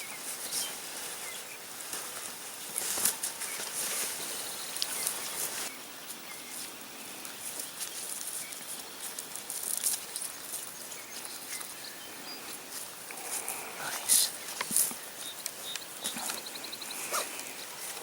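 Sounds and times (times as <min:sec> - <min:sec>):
footsteps through dry vegetation: 0:00.0 - 0:13.7
faint bird chirps: 0:13.2 - 0:18.0.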